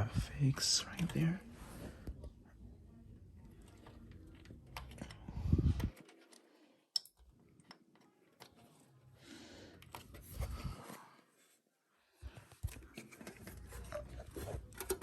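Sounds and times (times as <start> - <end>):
handling clicks and rustling: 3.3 - 8.9, 12.2 - 15.0.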